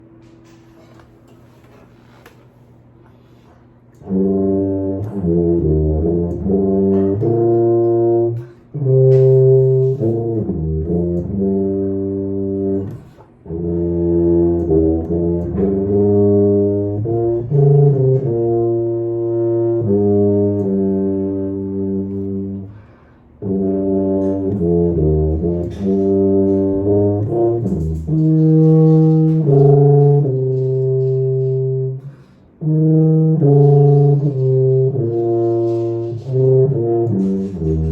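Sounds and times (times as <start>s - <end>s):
tuba playing slow melody: 3.2s - 37.9s.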